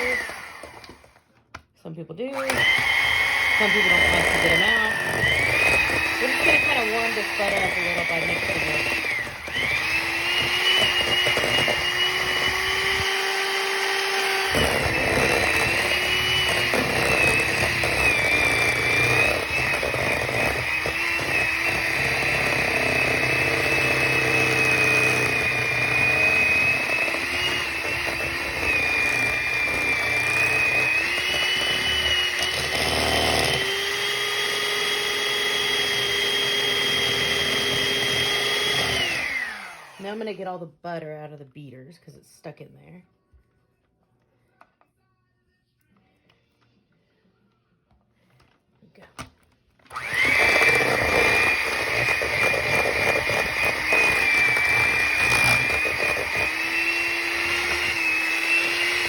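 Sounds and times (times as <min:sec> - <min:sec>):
electric hand mixer whine: 0:00.0 - 0:01.2, 0:02.3 - 0:40.3, 0:49.9 - 0:59.0.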